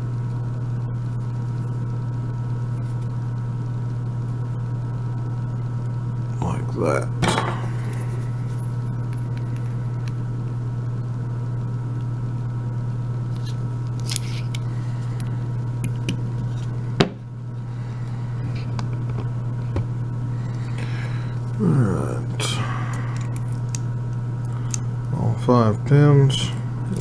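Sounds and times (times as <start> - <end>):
low electrical hum: 0.0 - 27.0.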